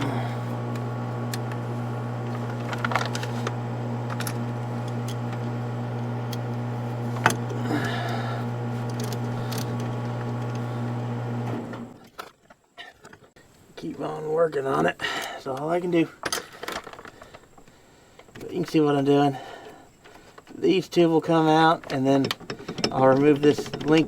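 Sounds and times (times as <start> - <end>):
steady low hum: 0.0 - 12.0
metal tools clinking on bolts: 21.8 - 24.0.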